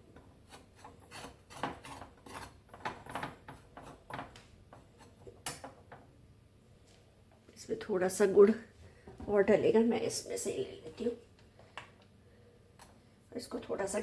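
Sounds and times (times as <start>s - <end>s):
spoon scraping in a pan: 0.4s - 4.2s.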